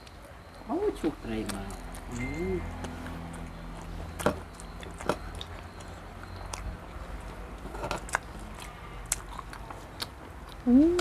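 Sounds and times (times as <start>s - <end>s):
chewing and biting: 1.3s - 11.0s.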